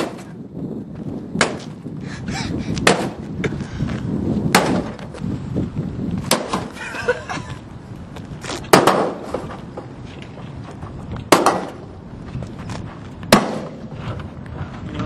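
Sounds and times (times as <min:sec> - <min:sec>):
heavy blows on metal casing: 0:02.8 - 0:03.5, 0:04.4 - 0:05.2, 0:11.2 - 0:12.0.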